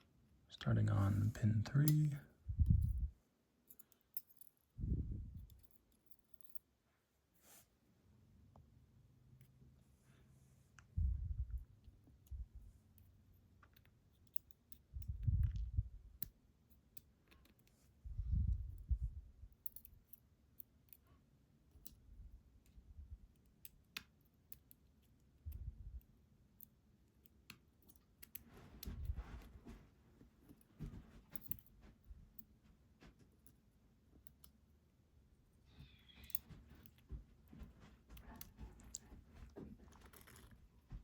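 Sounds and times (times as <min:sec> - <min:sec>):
lock pins clicking: 0:13.0 - 0:14.9, 0:19.5 - 0:21.0.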